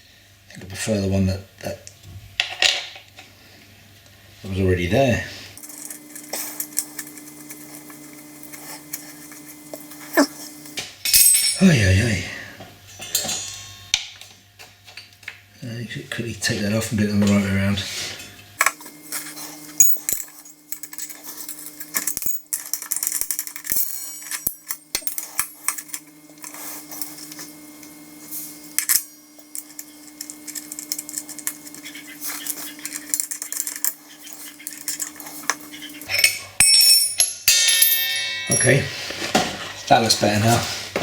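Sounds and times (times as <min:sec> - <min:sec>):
metal parts clinking: 0:18.6 - 0:27.5, 0:28.6 - 0:38.8.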